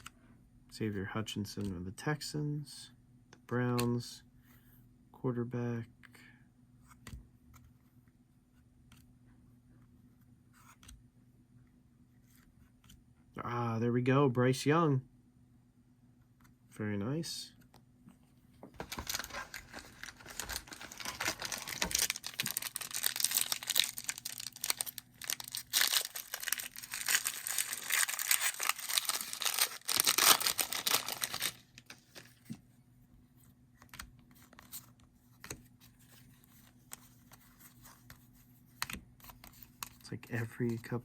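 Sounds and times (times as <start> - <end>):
foil wrapper tearing and crinkling: 18.8 - 32.4.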